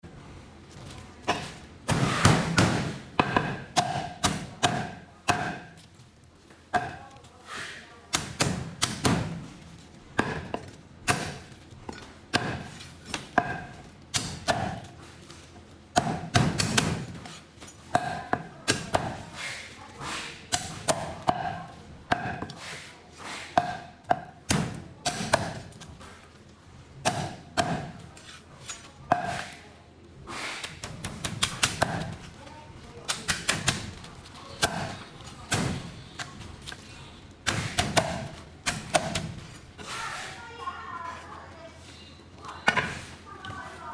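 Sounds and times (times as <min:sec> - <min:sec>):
cleaver chopping on a block: 0:01.3 - 0:05.7, 0:10.2 - 0:11.4, 0:12.3 - 0:14.8, 0:16.0 - 0:17.2, 0:20.6 - 0:22.6, 0:23.6 - 0:25.6, 0:27.0 - 0:28.0, 0:30.8 - 0:32.1, 0:37.4 - 0:39.3.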